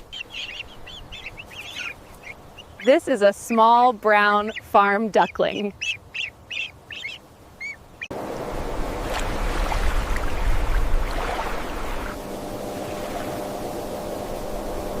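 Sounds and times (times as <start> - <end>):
duckling peeping: 0.0 - 8.1.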